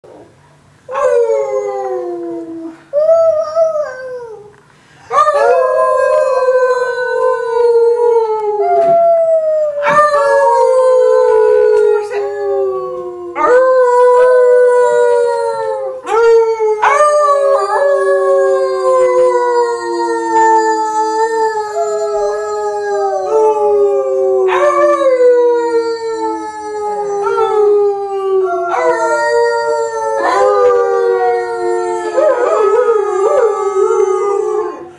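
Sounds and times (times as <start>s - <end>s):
dog howling: 5.1s - 34.9s
second dog howling: 8.2s - 12.0s.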